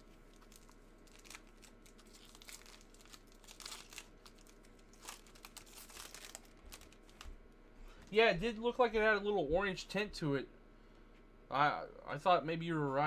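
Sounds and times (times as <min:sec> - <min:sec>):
trading cards rustling: 0:00.3 - 0:08.2.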